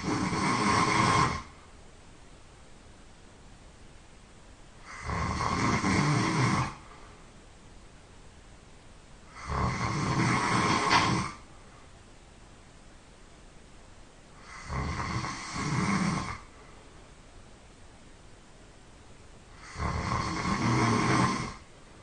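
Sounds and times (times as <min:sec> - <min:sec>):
person snoring: 0:00.0 - 0:01.6, 0:04.8 - 0:07.0, 0:09.3 - 0:11.5, 0:14.4 - 0:16.5, 0:19.5 - 0:21.7.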